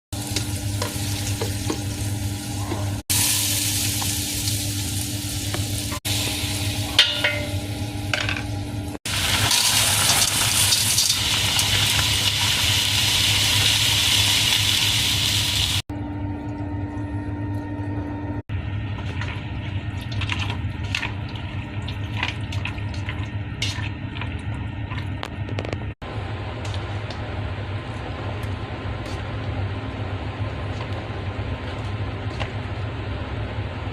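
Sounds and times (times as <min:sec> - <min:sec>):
food sizzling in a pot: 0:00.2 - 0:07.9, 0:09.1 - 0:15.8
steady low hum: 0:15.9 - 0:33.9.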